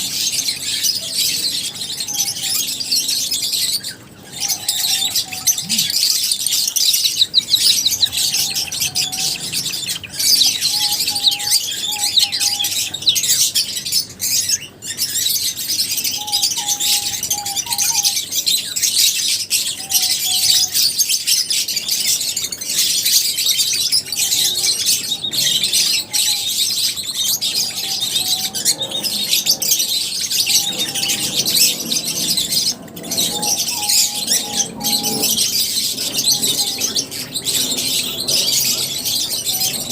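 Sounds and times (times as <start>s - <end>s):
lovebirds chattering: 0.0s - 39.9s
low whistled bird notes: 27.7s - 39.9s.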